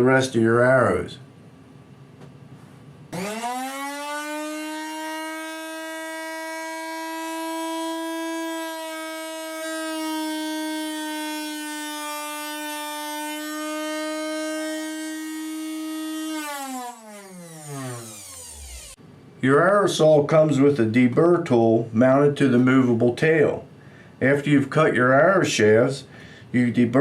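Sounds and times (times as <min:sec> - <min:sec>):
electric saw motor whining: 0:03.1 - 0:19.0.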